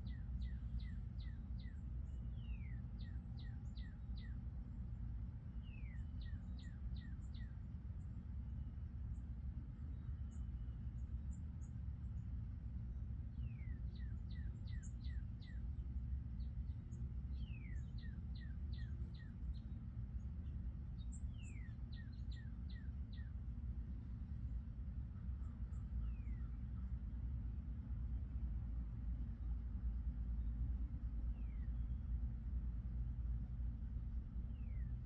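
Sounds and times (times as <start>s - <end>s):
songbird singing: 0.0s - 4.4s, 5.6s - 7.6s, 13.3s - 23.6s, 25.4s - 26.9s, 31.3s - 32.1s, 34.4s - 35.0s
low outdoor rumble: 0.0s - 35.0s.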